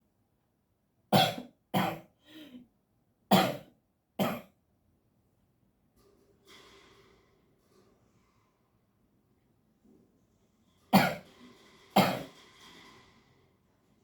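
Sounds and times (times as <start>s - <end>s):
person coughing: 1.2s - 2.6s, 11.0s - 11.2s, 12.0s - 12.3s.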